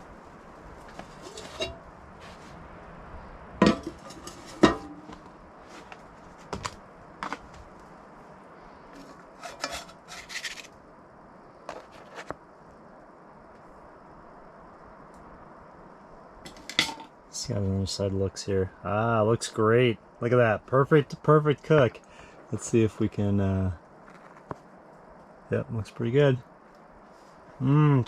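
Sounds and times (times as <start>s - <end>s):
utensils clinking against a pan: 1.2s - 1.8s, 3.6s - 5.1s, 9.4s - 10.6s, 16.5s - 17.1s.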